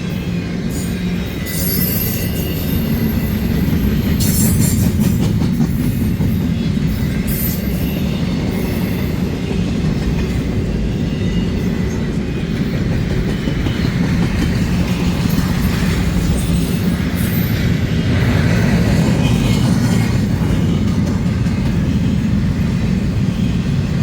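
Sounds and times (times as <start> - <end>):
train wheels rumbling on rails: 0.0 - 24.0.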